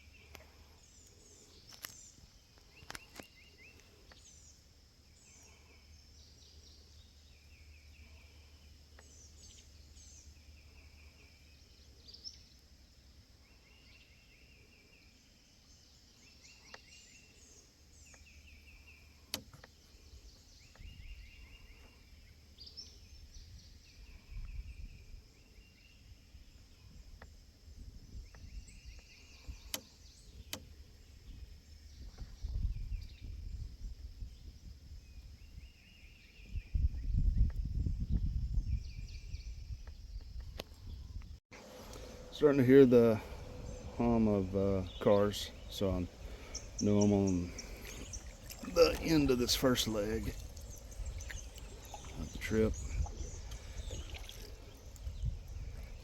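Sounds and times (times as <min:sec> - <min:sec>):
songbirds calling: 0:00.0 - 0:56.0
low rumbling: 0:40.9 - 0:56.0
high bird chirps: 0:43.1 - 0:56.0.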